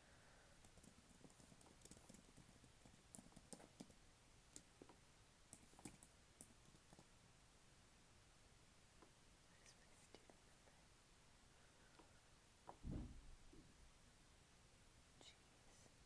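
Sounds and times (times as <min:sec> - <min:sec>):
typing on keyboard: 0:00.6 - 0:04.0, 0:05.5 - 0:07.1.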